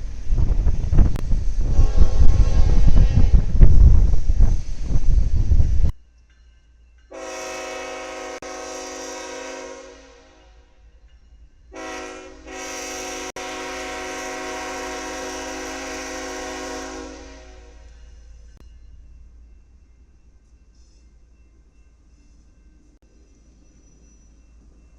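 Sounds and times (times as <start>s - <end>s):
locomotive air horn blasts: 1.6s - 3.7s, 7.1s - 10.7s, 11.7s - 18.0s.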